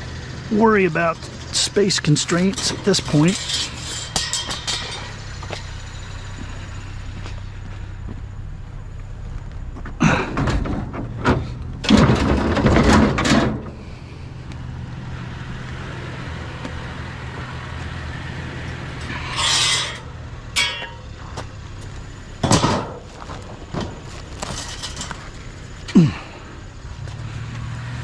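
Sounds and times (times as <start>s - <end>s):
low steady hum: 0.0s - 27.6s
wire shelving clattering: 0.5s - 5.3s, 10.2s - 13.8s, 19.0s - 21.2s, 22.4s - 23.1s, 23.7s - 25.5s
metal ringing scrape: 1.1s - 6.3s, 19.0s - 21.3s.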